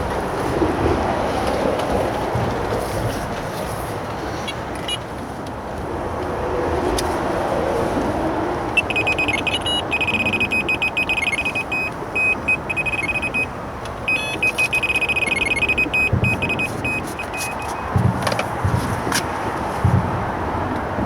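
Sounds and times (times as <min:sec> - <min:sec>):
road traffic hum: 0:00.0 - 0:21.0
electronic bite alarm beeping: 0:08.8 - 0:18.0.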